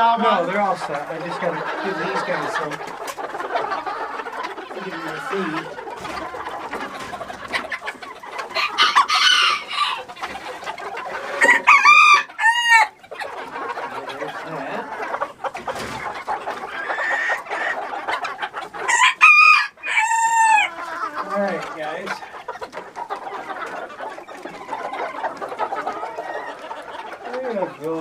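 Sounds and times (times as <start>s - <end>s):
chickens clucking: 0.0s - 28.0s
rooster crowing loudly: 8.7s - 10.0s, 11.4s - 12.9s, 18.9s - 20.7s.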